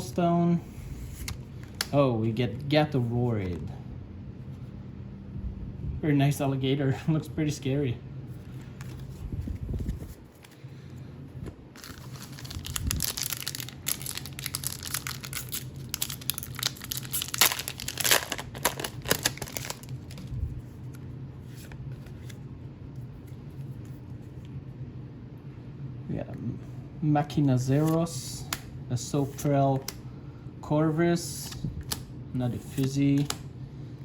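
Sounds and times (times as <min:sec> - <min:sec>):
faint handling rustles: 0:08.2 - 0:14.1
wrapper tearing and crinkling: 0:11.8 - 0:20.4.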